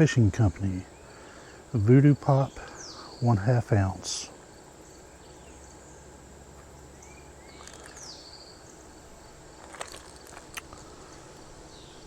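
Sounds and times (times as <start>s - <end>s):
insects droning: 0.0s - 12.0s
packaging clicks: 9.6s - 11.2s.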